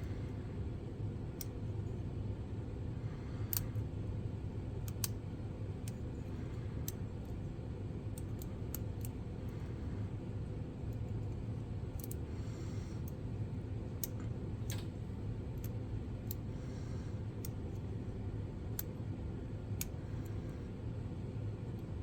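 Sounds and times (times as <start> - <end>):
steady low hum: 0.0 - 22.0
faint metallic lock picking clicks: 11.9 - 12.2.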